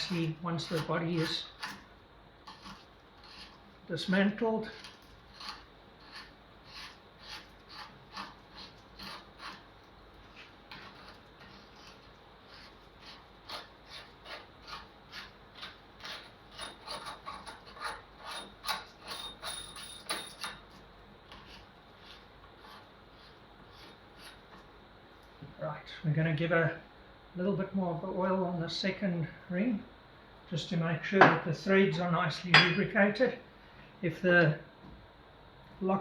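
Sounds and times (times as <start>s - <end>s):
metal scraping on threads: 0.0s - 3.6s, 10.3s - 20.6s.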